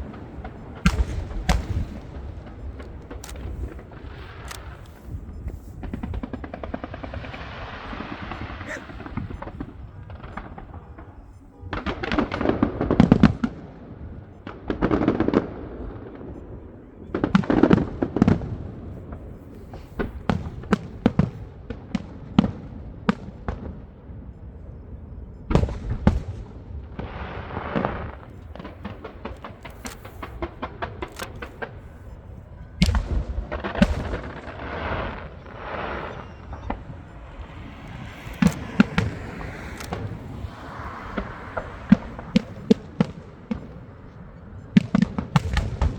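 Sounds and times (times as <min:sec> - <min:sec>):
firework shells bursting with bangs: 0:00.0 - 0:11.1, 0:25.6 - 0:45.9
firework cracks and crackling: 0:00.0 - 0:24.1, 0:25.5 - 0:45.9.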